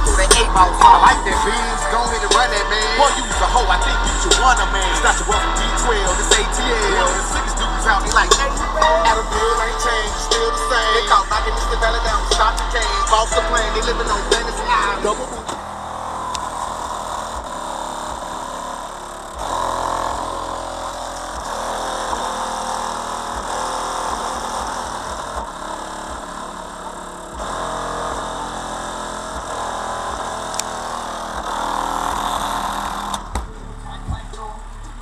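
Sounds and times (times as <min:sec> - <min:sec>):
rumble and rattle: 0:00.0 - 0:35.0
subwoofer playing deep bass: 0:00.0 - 0:35.0.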